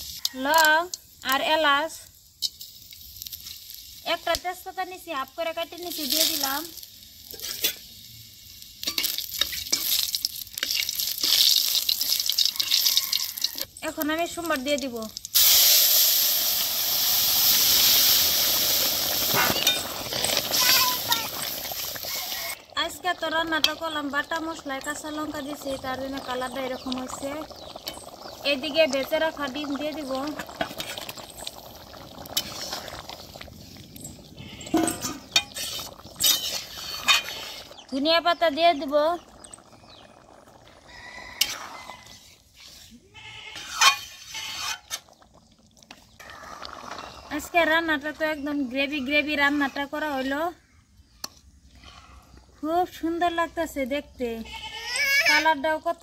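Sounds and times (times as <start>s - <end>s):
oil crackling: 0.0s - 49.8s
spices sizzling in hot oil: 0.0s - 52.0s
spoon scraping a pan: 7.2s - 8.0s, 8.8s - 13.7s, 19.2s - 22.6s, 30.0s - 31.4s, 32.4s - 32.9s, 34.4s - 37.8s, 41.0s - 45.2s.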